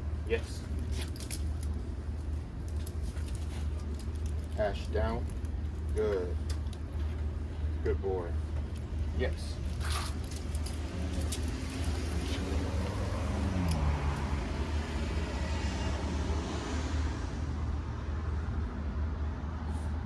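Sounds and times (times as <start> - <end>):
traffic rumble: 0.0 - 20.0
vehicle passing by: 9.9 - 20.0.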